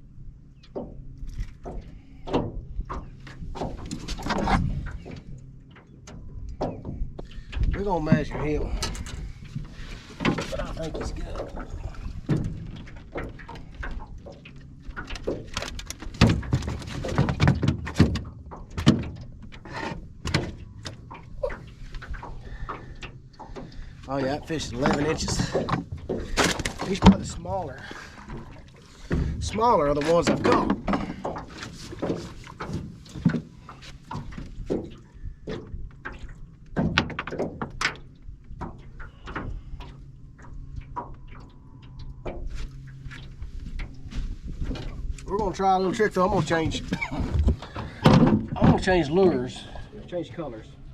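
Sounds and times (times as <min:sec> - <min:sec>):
fish knocking in a boat: 0:06.2 - 0:39.6, 0:46.2 - 0:49.0
knocks and thumps of handling: 0:15.0 - 0:21.0.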